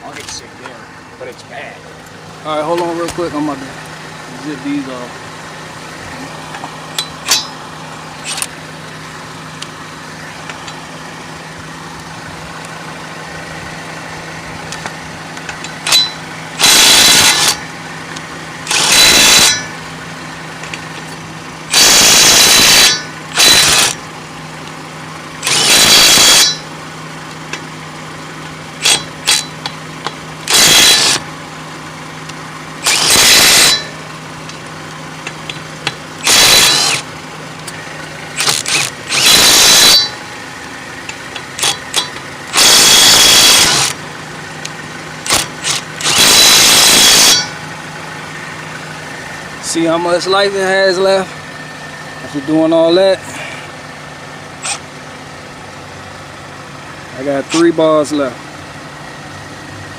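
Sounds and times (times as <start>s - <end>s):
impact wrench zipping lug nuts: 6.5s - 7.6s, 8.2s - 8.6s, 14.7s - 17.7s, 18.6s - 19.8s, 20.6s - 24.0s, 25.4s - 26.7s, 28.8s - 31.3s, 32.8s - 34.6s, 35.2s - 40.2s, 41.1s - 44.0s, 45.2s - 47.6s, 54.6s - 54.9s.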